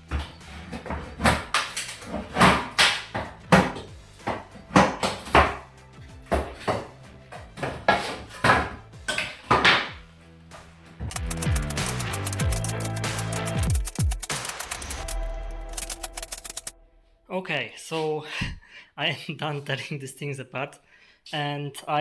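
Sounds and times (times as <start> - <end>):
background music: 0.0 - 17.4
wooden boards hammered and pried: 0.1 - 5.6, 6.3 - 10.0.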